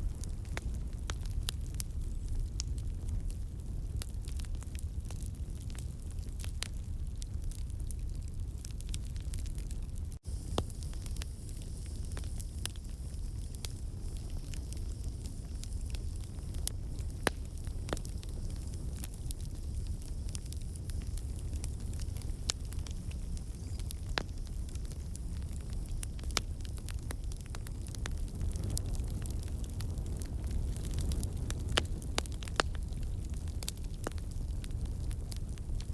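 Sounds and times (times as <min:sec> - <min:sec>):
low rumble of flames: 0:00.0 - 0:35.9
wood crackling and popping: 0:00.0 - 0:35.9.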